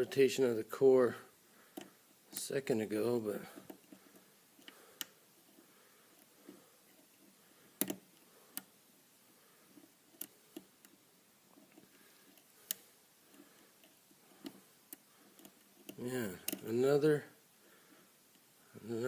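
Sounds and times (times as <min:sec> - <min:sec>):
lock pick clicking: 0:07.8 - 0:08.0, 0:13.8 - 0:16.6.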